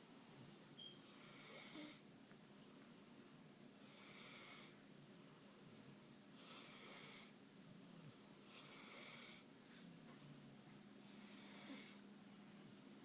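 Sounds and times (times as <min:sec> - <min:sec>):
dog snoring: 0:01.1 - 0:02.0, 0:03.9 - 0:05.5, 0:06.4 - 0:09.4, 0:11.2 - 0:12.0.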